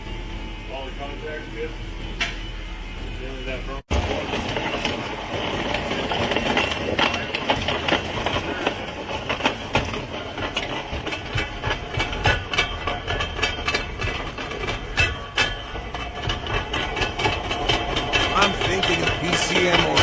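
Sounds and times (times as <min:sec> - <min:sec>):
vehicle engine running: 0:00.0 - 0:20.0
rattle of clicks and knocks: 0:04.0 - 0:20.0.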